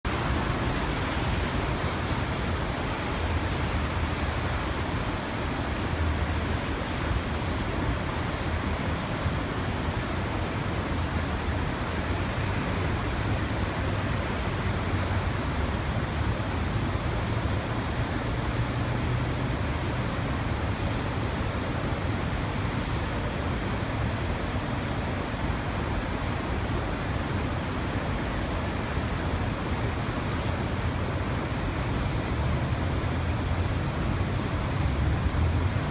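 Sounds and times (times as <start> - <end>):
waterfall rushing: 19.2 - 35.9.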